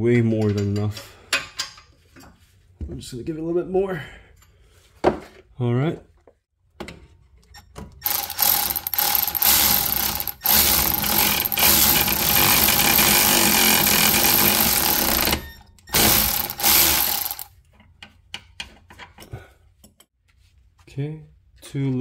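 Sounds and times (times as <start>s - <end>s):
ratchet wrench ratcheting: 8.0s - 17.5s.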